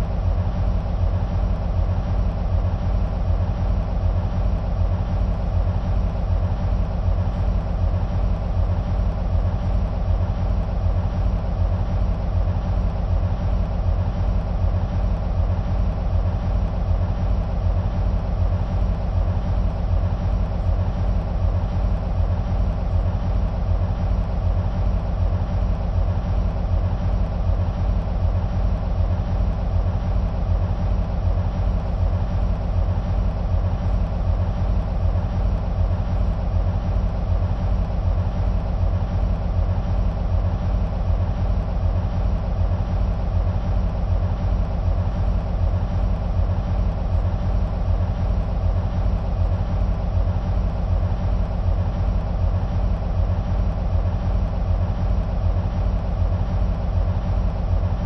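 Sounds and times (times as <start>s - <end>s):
diesel locomotive engines idling: 0.0s - 58.0s.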